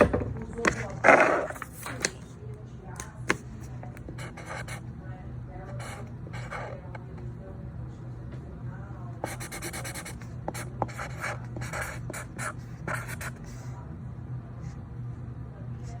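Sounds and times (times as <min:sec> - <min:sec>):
steady low hum: 0:00.0 - 0:16.0
pen writing on paper: 0:00.6 - 0:02.2, 0:03.3 - 0:04.8, 0:05.8 - 0:07.1, 0:09.2 - 0:13.7.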